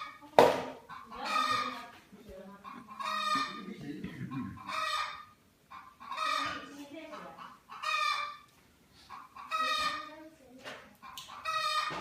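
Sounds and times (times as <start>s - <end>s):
poultry calling: 0.8s - 1.9s, 2.6s - 10.2s, 11.0s - 12.0s.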